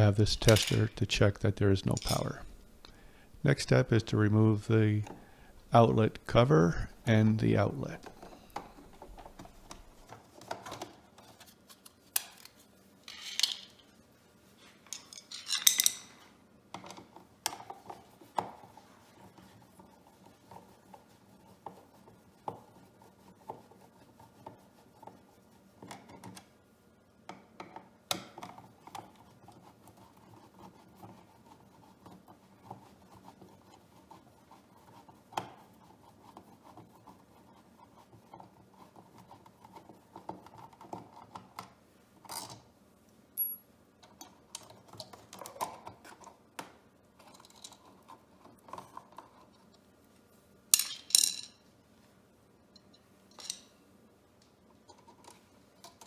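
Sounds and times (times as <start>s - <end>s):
scraping rubs: 0.0s - 10.2s.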